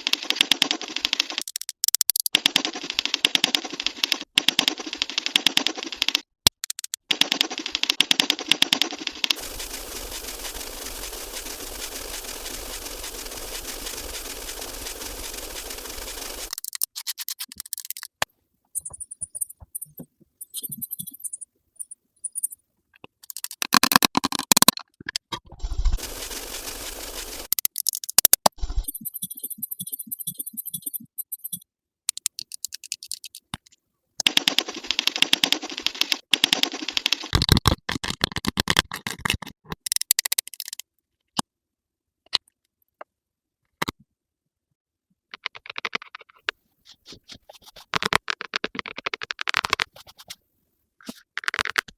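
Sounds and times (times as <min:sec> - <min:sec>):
rapid clicking and tapping: 0:00.0 - 0:19.9, 0:25.7 - 0:31.2, 0:34.2 - 0:40.8, 0:45.4 - 0:50.4
scratchy makeup brushing: 0:46.8 - 0:48.0, 0:49.9 - 0:50.4.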